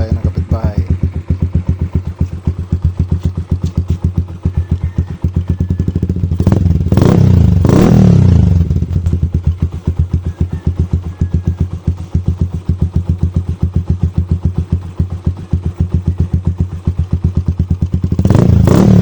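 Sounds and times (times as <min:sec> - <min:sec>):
motorcycle engine idling and revving: 0:00.0 - 0:19.0.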